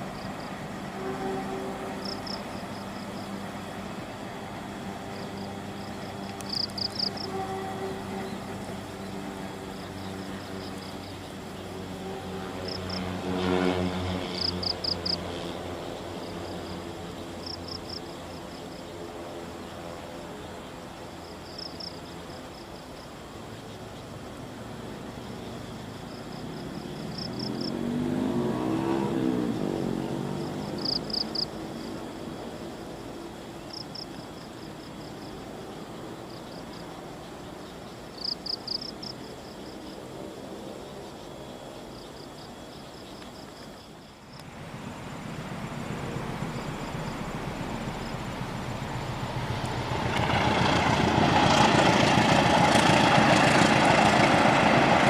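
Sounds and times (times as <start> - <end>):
vehicle passing by: 0.0 - 20.2, 24.2 - 34.1, 44.2 - 55.0
insects chirping in high trills: 0.0 - 55.0.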